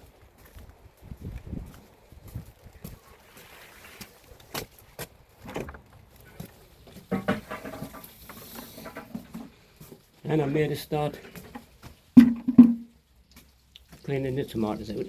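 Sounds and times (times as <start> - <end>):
footsteps: 0.0 - 14.3
knocks and taps: 12.2 - 12.9.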